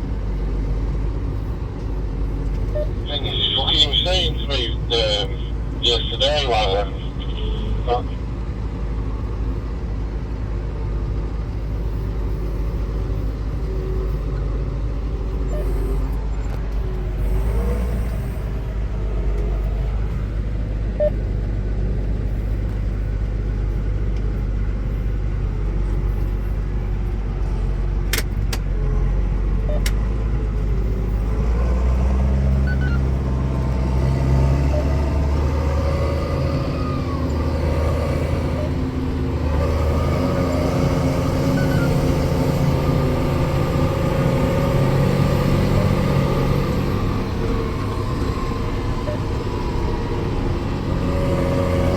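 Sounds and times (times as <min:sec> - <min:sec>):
tractor engine under load: 0:00.0 - 0:51.9.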